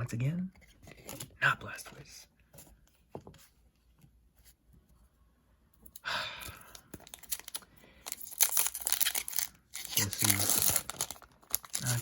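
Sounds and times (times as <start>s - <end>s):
person sighing: 6.0s - 6.9s
foil wrapper crinkling: 7.0s - 12.0s.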